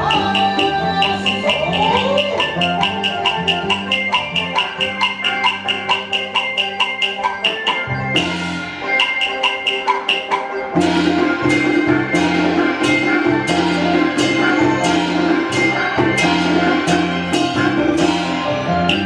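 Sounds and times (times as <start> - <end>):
fast wooden clapper beat: 0.0 - 7.8
melodic instruments: 0.0 - 19.0.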